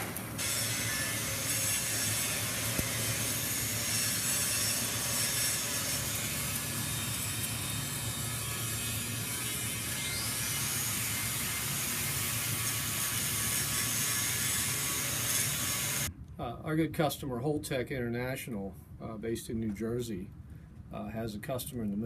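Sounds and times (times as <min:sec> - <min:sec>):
machine hiss: 0:00.0 - 0:09.3.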